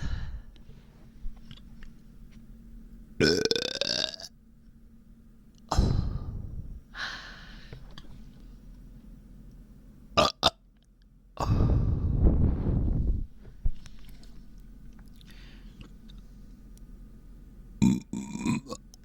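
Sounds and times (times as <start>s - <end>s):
person burping: 3.2s - 4.3s, 10.2s - 10.6s, 17.8s - 18.8s.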